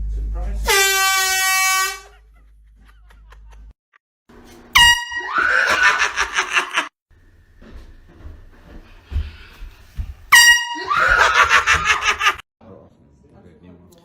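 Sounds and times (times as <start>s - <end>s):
air horn honk: 0.6s - 2.3s, 4.7s - 5.7s, 10.3s - 11.2s.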